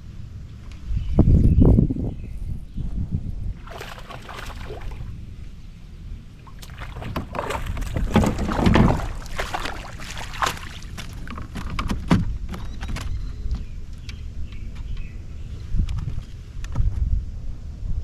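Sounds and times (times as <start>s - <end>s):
water splashing around kayak: 3.6s - 5.3s, 6.4s - 12.3s
knocks on kayak hull: 6.6s - 12.3s.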